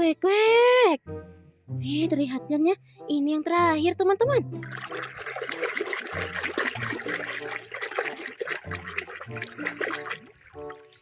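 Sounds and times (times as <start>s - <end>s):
soft background music: 0.0s - 11.0s
water splashing and trickling: 4.2s - 11.0s
small wet clicks: 4.6s - 11.0s.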